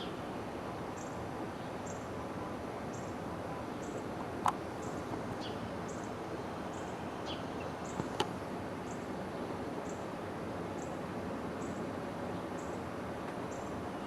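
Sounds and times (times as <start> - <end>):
bird chirping: 3.7 - 4.1, 4.8 - 6.1, 6.7 - 8.0.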